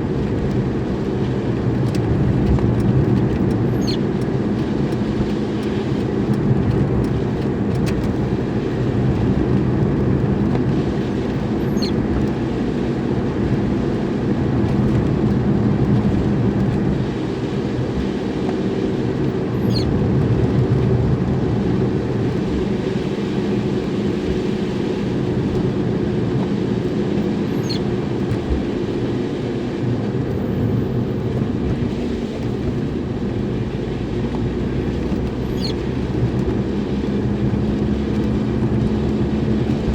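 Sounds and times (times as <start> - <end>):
car engine and road noise: 0.0 - 39.9
faint high chirp: 27.6 - 27.8.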